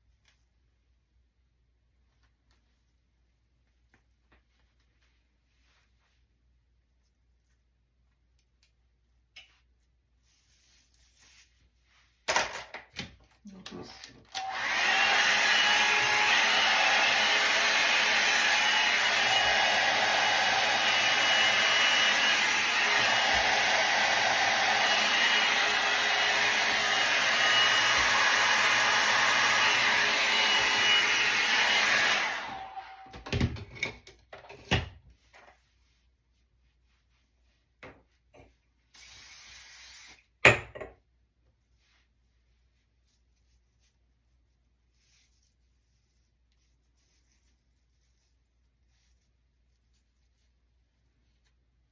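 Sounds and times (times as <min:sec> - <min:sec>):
hair dryer running: 0:14.3 - 0:33.4.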